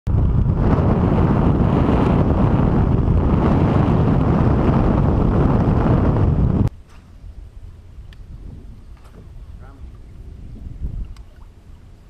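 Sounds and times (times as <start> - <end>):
boat engine rumble: 0.1 - 12.0
wind buffeting microphone: 0.1 - 12.0.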